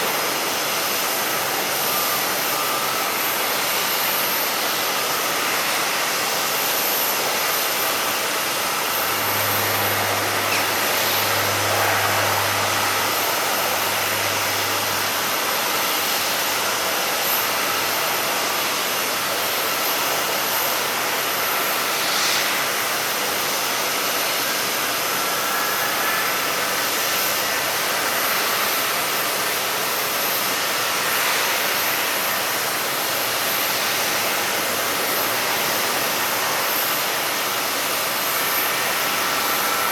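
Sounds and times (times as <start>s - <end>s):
jet engines rushing: 0.0s - 39.9s
low hum: 8.8s - 15.5s.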